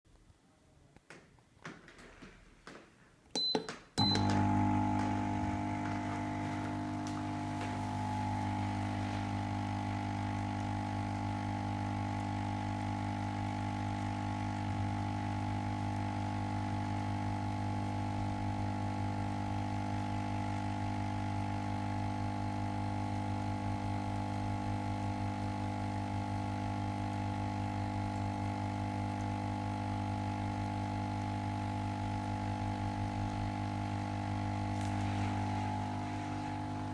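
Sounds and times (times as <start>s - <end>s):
high beeps: 3.4s - 4.3s.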